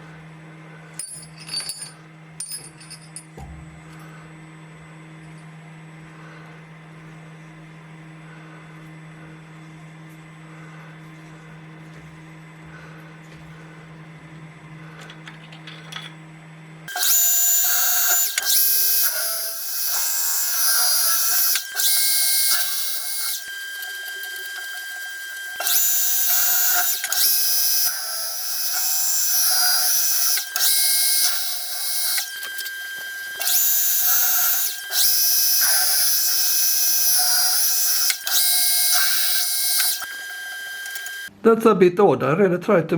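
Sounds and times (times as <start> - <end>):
high-pitched drill cutting screech: 16.9 - 41.3
power drill humming: 16.9 - 41.3.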